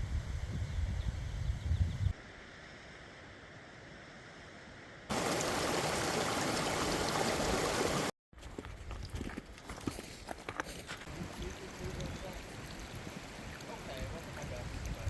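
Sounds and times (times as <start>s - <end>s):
creek water rushing: 5.1s - 8.1s, 11.1s - 14.9s.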